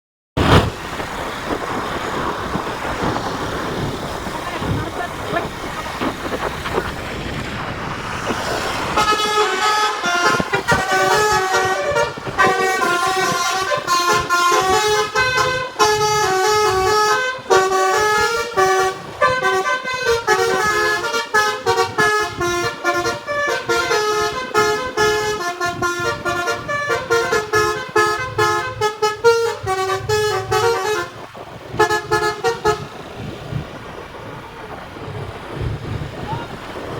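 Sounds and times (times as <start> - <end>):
rushing noise: 0.4 - 36.9
musical bus horn playing a tune: 8.8 - 33.0.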